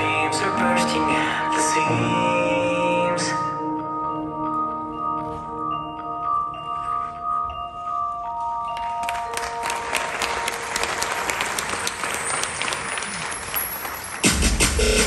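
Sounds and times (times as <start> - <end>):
chime-like music tones: 1.8 - 14.3
audience applauding: 8.7 - 15.0.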